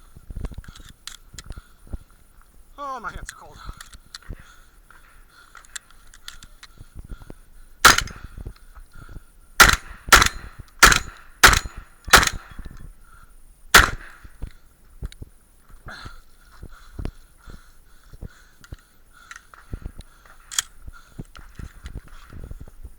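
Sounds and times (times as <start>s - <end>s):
shotgun shots: 7.8s - 8.4s, 9.6s - 12.6s, 13.7s - 14.3s.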